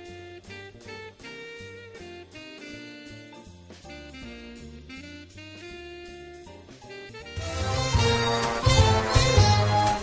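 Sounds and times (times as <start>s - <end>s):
instrumental jazz with saxophone: 0.0s - 10.0s.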